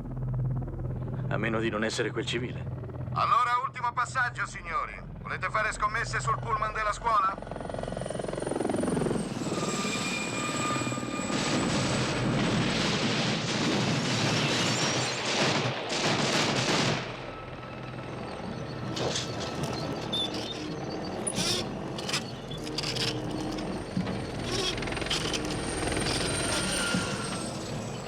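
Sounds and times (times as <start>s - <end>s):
helicopter flying low: 0.0s - 28.0s
rapid cannon fire: 11.4s - 17.5s
sharp cracks: 13.2s - 17.3s.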